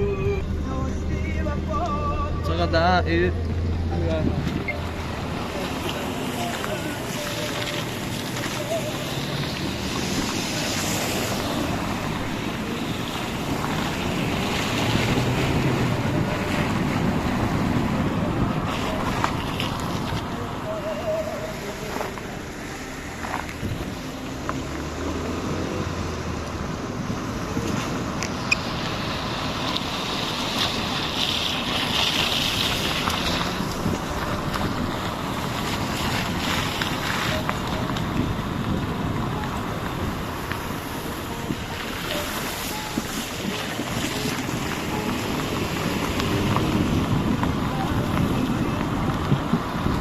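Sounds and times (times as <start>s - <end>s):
heavy rain: 3.3s - 50.0s
wind buffeting microphone: 26.7s - 50.0s.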